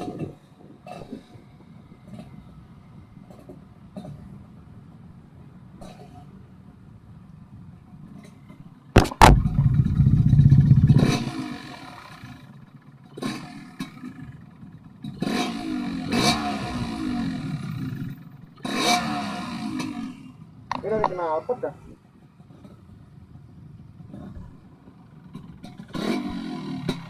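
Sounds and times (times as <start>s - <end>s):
sharp knock: 9.0s - 11.2s
motorcycle engine revving: 9.0s - 20.4s, 25.2s - 27.0s.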